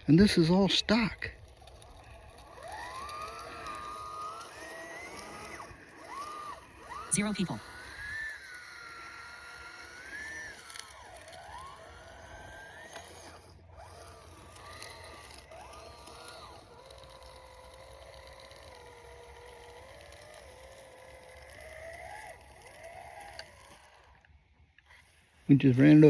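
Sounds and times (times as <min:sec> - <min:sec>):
electric motor whining: 0:00.0 - 0:26.0.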